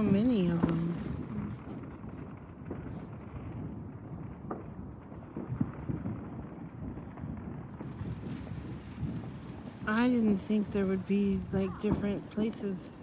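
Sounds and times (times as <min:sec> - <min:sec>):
faint firework pops: 0:00.0 - 0:09.9, 0:11.7 - 0:12.6
distant fireworks booming: 0:00.0 - 0:13.0.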